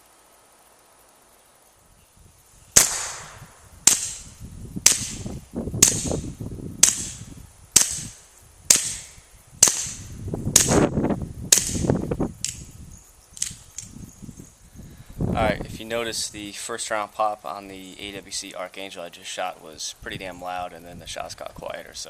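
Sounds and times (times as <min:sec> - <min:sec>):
suppressed pistol shots: 0:02.8 - 0:05.2, 0:06.8 - 0:07.2, 0:07.8 - 0:10.8.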